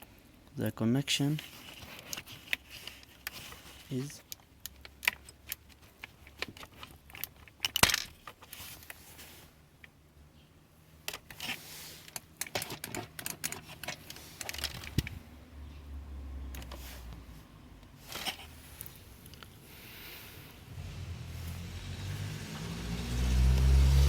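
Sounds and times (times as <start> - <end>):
small parts clicking and rattling: 1.3 - 9.2, 11.0 - 15.2.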